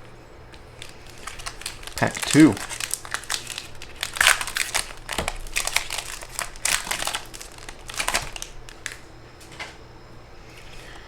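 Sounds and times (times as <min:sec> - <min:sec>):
wrapper tearing and crinkling: 0:00.5 - 0:09.0.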